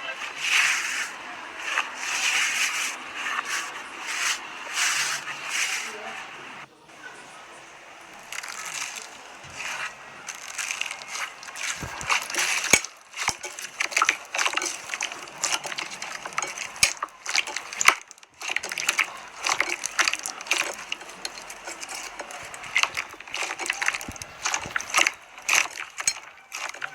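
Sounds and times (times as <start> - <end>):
slime crackling and popping: 8.1 - 26.9.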